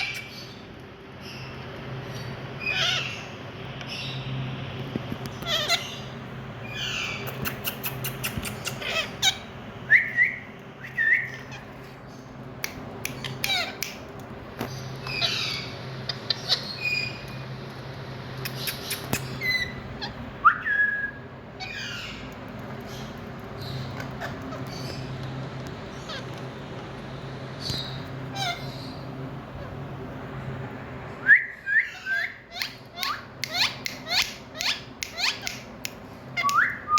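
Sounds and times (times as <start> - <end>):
parakeet chirps and squawks: 0.0 - 4.4, 5.0 - 20.8, 21.5 - 30.4, 31.8 - 36.9
steady low hum: 0.0 - 36.9
rising whistles: 9.9 - 11.3, 20.4 - 21.3, 31.2 - 32.4.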